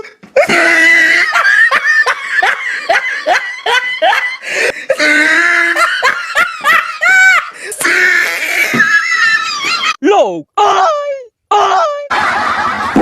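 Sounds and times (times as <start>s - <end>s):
person laughing hard: 0.0s - 10.0s.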